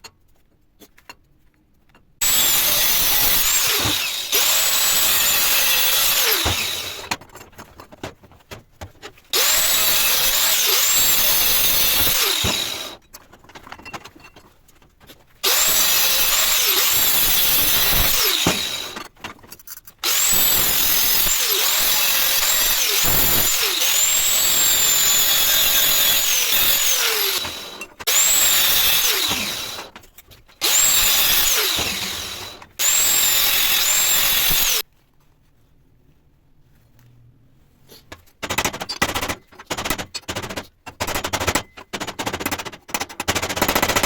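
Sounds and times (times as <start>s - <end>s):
angle grinder cutting steel: 2.2s - 7.1s, 9.3s - 13.0s, 15.4s - 19.1s, 20.0s - 29.9s, 30.6s - 34.8s.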